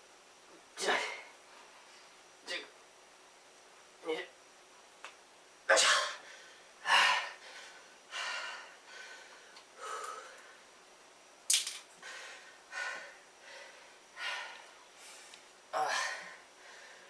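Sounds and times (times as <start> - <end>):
man breathing hard: 5.8 - 10.7, 12.0 - 17.0.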